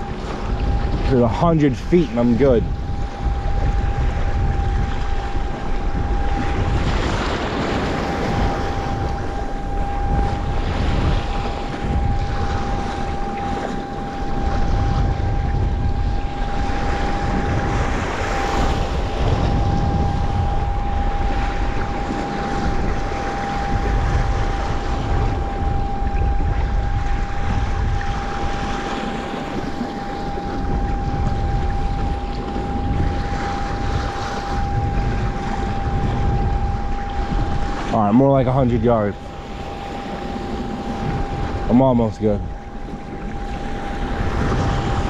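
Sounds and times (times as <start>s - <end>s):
breaking waves splashing: 0.0s - 45.0s
steady high tone: 0.0s - 45.0s
wind buffeting microphone: 0.0s - 45.0s.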